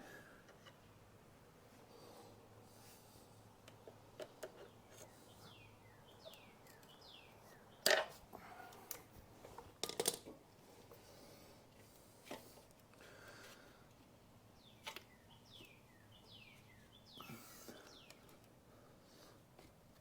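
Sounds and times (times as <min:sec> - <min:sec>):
birds chirping: 0:04.5 - 0:09.0, 0:14.5 - 0:18.9
tool and plastic clicks and rattles: 0:09.8 - 0:10.4.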